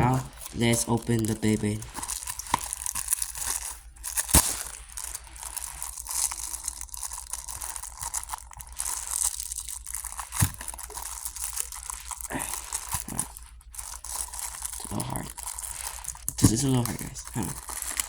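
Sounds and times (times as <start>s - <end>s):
packaging crinkling: 0.0s - 18.0s
sharp snap: 4.3s - 4.7s.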